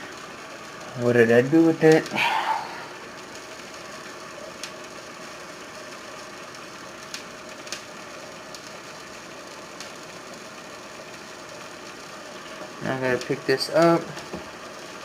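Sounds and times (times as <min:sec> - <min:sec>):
small electric motor humming: 0:00.0 - 0:15.0
faint clicks: 0:07.1 - 0:07.9.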